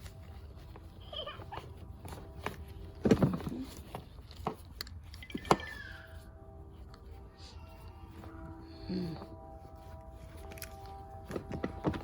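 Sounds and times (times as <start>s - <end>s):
handling knocks and clicks: 10.4s - 12.0s.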